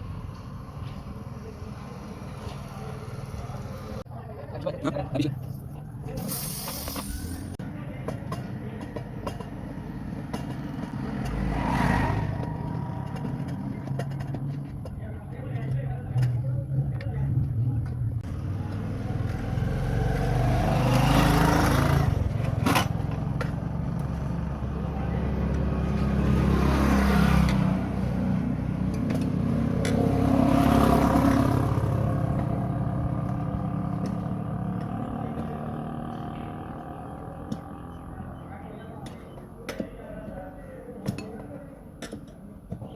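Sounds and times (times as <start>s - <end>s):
vehicle passing: 10.0s - 14.8s, 18.2s - 39.0s
motorcycle engine running: 17.4s - 26.0s, 28.2s - 38.7s.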